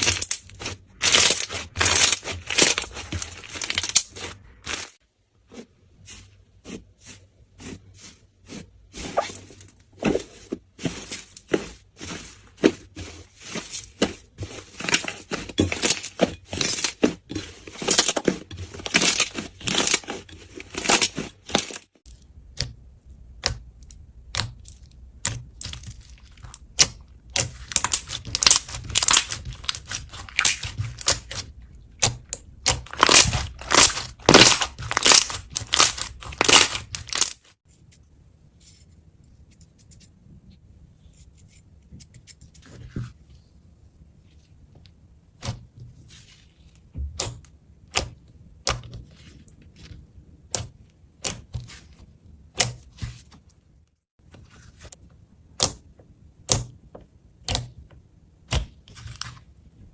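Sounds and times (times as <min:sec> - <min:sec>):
faint handling noise: 0:00.0 - 0:21.9
slime crackling and popping: 0:32.0 - 0:37.3.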